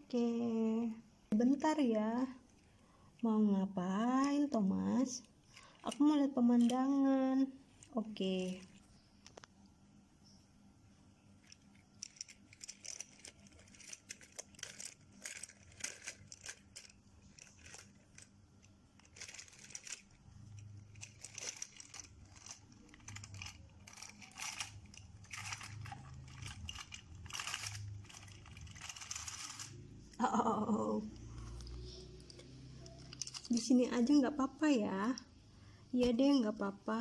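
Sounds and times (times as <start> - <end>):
faint low hum: 0.0 - 37.0
toys being handled: 4.1 - 9.5, 11.3 - 34.2.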